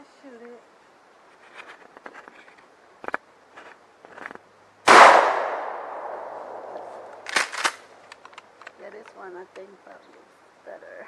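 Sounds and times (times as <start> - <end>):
shotgun blast with echo: 4.9 - 7.7.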